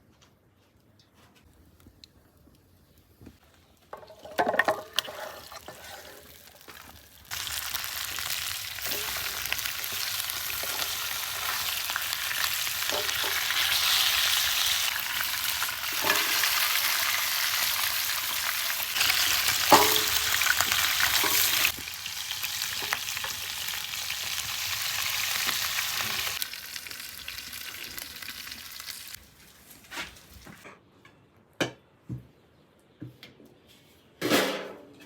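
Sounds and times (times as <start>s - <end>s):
food sizzling in hot oil: 5.0s - 29.2s.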